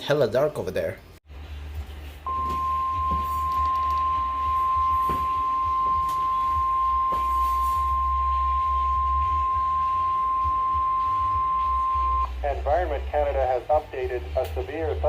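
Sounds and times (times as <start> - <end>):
low rumbling hum: 1.3 - 15.0
steady alarm tone: 2.3 - 12.3.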